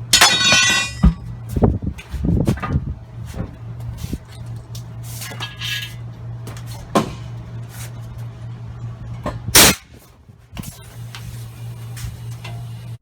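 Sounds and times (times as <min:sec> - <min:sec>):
tire bars clanking on wheel: 0:00.0 - 0:01.4
steady low hum: 0:00.0 - 0:13.0.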